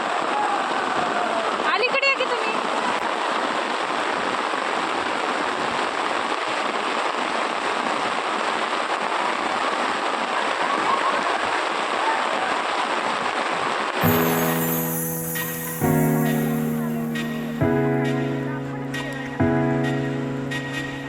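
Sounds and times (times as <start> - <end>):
music: 14.0 - 21.0
waterfall rushing: 14.0 - 21.0.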